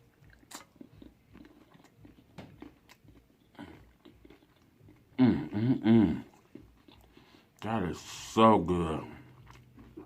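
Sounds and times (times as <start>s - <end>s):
chewing pizza: 0.0s - 10.0s
person humming: 5.2s - 6.3s.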